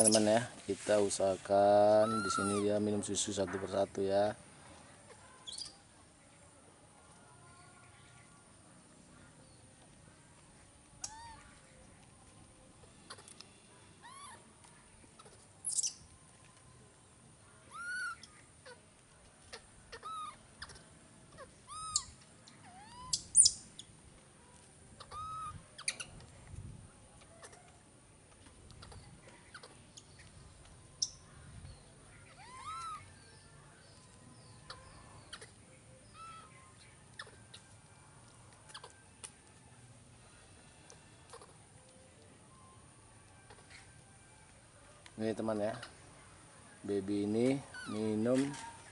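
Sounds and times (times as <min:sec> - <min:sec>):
baby monkeys calling: 0:00.0 - 0:00.4, 0:01.9 - 0:02.9, 0:05.1 - 0:05.8, 0:11.0 - 0:11.6, 0:13.0 - 0:13.4, 0:14.0 - 0:14.4, 0:15.1 - 0:16.1, 0:17.7 - 0:18.8, 0:19.4 - 0:23.9, 0:25.0 - 0:26.2, 0:27.3 - 0:27.7, 0:28.7 - 0:30.3, 0:32.1 - 0:33.4, 0:34.4 - 0:37.8, 0:38.7 - 0:39.1, 0:41.2 - 0:41.6, 0:43.4 - 0:44.0, 0:47.6 - 0:48.9.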